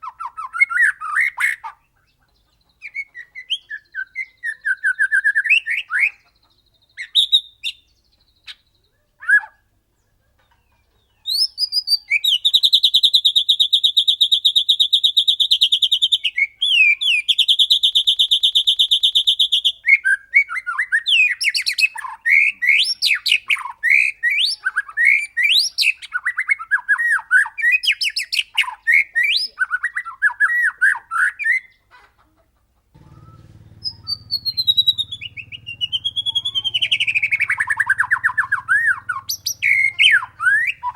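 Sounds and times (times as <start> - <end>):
bird singing whistles and trills: 0.0 - 2.1, 2.8 - 9.6, 11.2 - 31.8, 33.1 - 40.9
low hum: 33.0 - 40.6.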